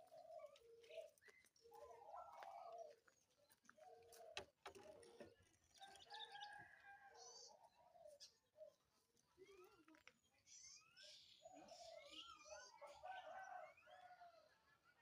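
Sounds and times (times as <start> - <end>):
birds cooing: 0.0 - 3.1, 3.7 - 5.4, 11.4 - 14.4.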